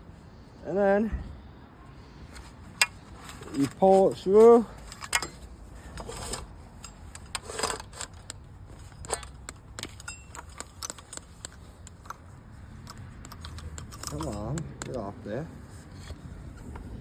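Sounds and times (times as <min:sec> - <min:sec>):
power cord rustling through housing: 0:02.0 - 0:17.0
small clicks: 0:12.8 - 0:15.0.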